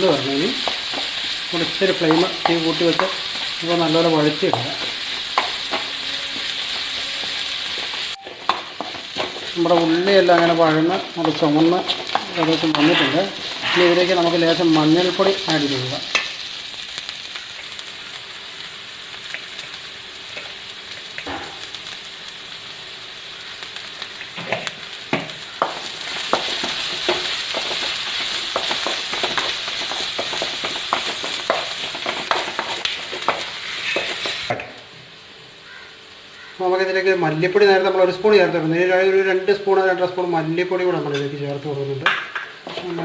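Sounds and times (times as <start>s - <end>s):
onions sizzling in hot oil: 0.0s - 43.0s
spatula scraping a pan: 11.9s - 14.2s.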